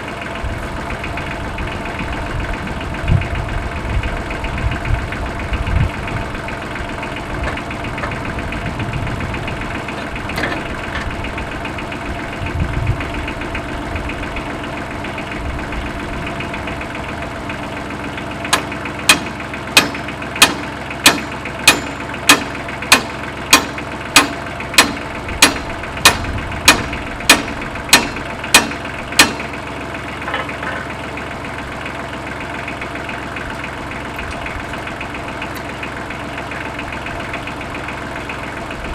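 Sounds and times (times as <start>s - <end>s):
tractor engine idling: 0.0s - 38.9s
sharp knocks: 18.5s - 29.5s.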